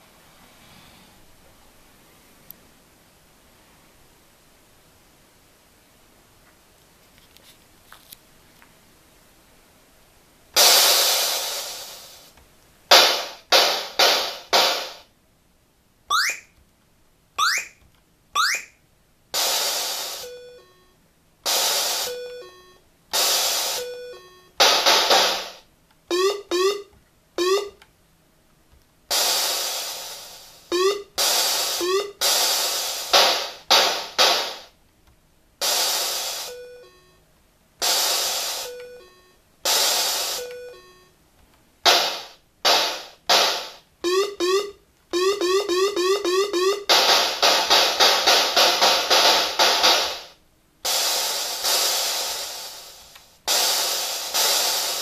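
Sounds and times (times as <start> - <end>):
retro video game sound effects: 16.1 - 16.5, 17.4 - 17.8, 18.4 - 18.8, 23.6 - 27.8, 30.7 - 33.5, 43.6 - 50.2.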